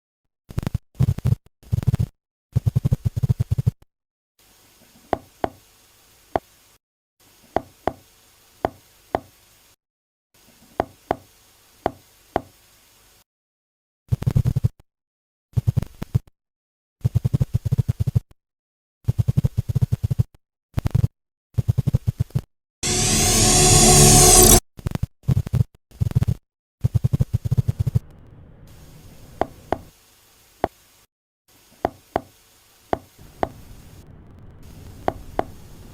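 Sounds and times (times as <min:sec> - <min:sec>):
faint hiss: 0:04.4 - 0:09.8, 0:28.4 - 0:35.9.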